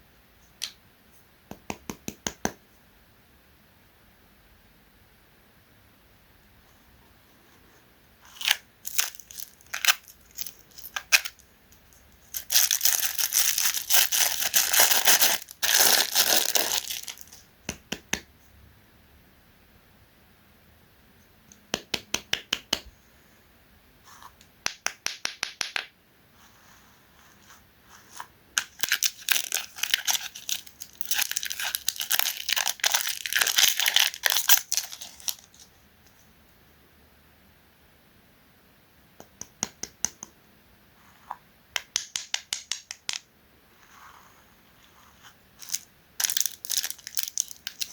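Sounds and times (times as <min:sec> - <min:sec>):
wrapper crinkling and tearing: 0:08.3 - 0:11.4, 0:12.2 - 0:17.4, 0:28.6 - 0:35.6, 0:45.6 - 0:47.9
chocolate wafer bar crunching: 0:08.4 - 0:11.4, 0:12.3 - 0:17.3, 0:28.6 - 0:35.5, 0:45.6 - 0:47.9.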